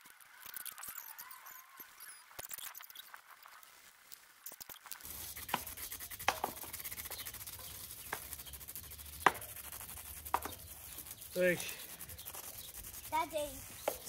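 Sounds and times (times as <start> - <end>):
tyre rubbing and scraping on rim: 5.0 - 14.0.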